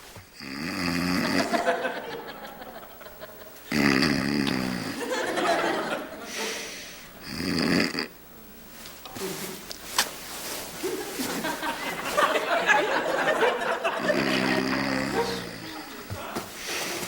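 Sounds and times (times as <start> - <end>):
man snoring loudly: 0.4 - 1.8, 3.7 - 5.1, 7.2 - 8.2, 14.0 - 15.9.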